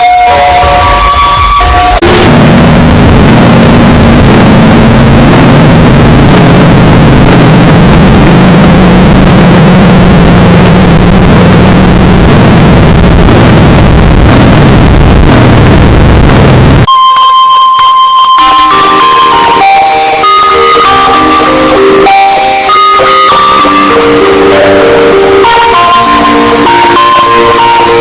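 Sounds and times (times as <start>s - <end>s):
loud distorted noise: 0.0s - 28.0s
low wavering drone: 18.4s - 28.0s.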